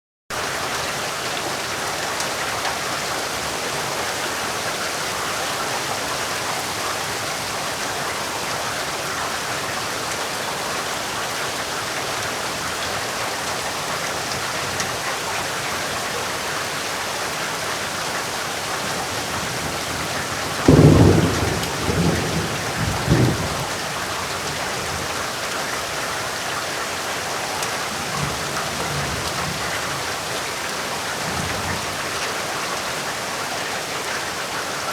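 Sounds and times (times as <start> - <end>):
heavy rain: 0.3 - 34.9
deep thunder rumble: 18.9 - 25.1.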